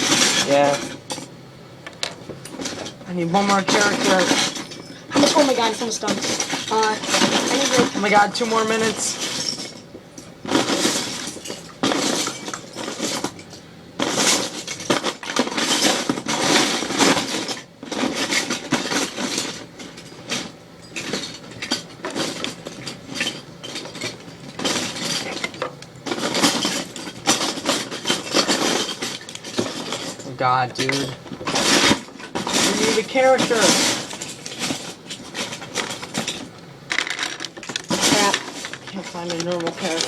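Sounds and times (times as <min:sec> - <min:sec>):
plastic bricks clattering: 0:03.3 - 0:09.8, 0:20.3 - 0:40.0.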